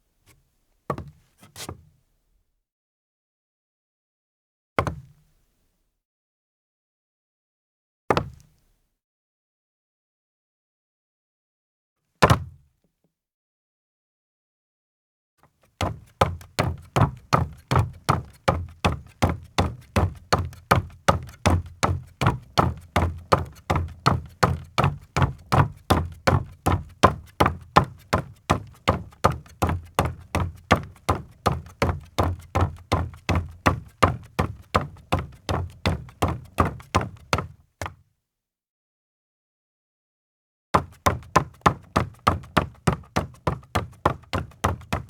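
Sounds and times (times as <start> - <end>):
footsteps on wooden deck: 15.8 - 38.0, 40.8 - 45.0.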